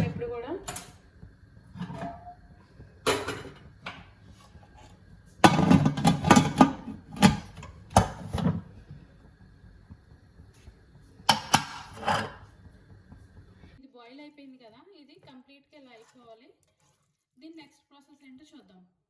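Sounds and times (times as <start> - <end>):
metal cookware knocking: 1.8 - 2.4, 3.0 - 4.1, 5.4 - 8.6, 11.3 - 12.4.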